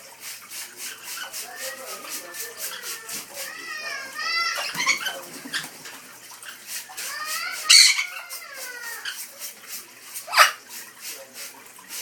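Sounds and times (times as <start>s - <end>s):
parrots splashing in water: 0.0s - 12.0s
parrot squawk: 1.1s - 5.8s, 6.5s - 9.3s, 10.2s - 10.6s
parrot chattering calls: 7.1s - 9.2s.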